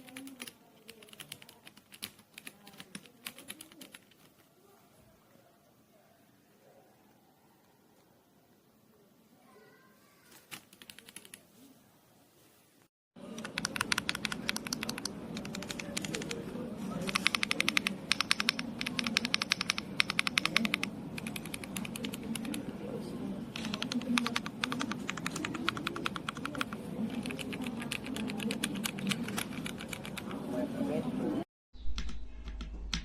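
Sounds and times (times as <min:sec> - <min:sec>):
mechanical keyboard typing: 0:00.0 - 0:04.4, 0:10.5 - 0:11.4, 0:13.2 - 0:22.7, 0:23.6 - 0:30.4.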